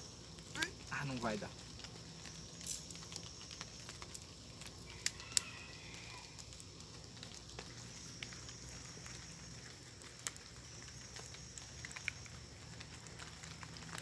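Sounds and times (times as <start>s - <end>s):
wood crackling and snapping: 0.0s - 14.0s.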